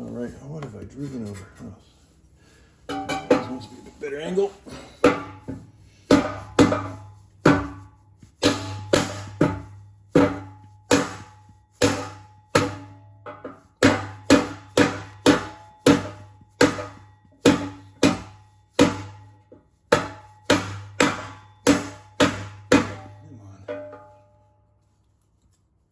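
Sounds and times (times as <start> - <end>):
mallet knocking on wood block: 8.4 - 19.2, 19.9 - 24.2.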